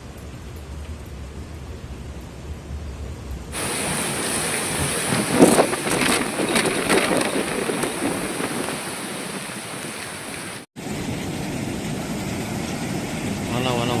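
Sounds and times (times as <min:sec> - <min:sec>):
storm wind battering microphone: 0:00.0 - 0:14.0.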